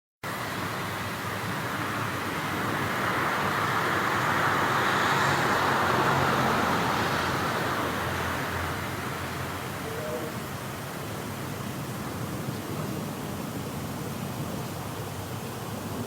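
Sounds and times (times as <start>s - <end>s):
road noise: 0.2s - 16.0s
vehicle passing: 2.4s - 10.5s.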